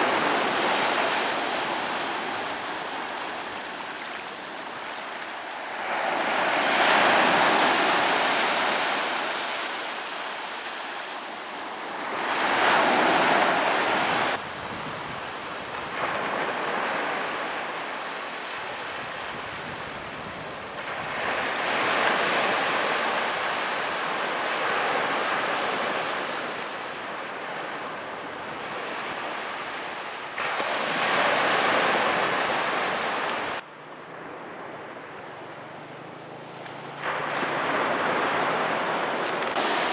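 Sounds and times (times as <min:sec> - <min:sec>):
ocean waves breaking on shore: 0:00.0 - 0:33.6, 0:36.8 - 0:39.9
crickets chirring: 0:30.6 - 0:39.9.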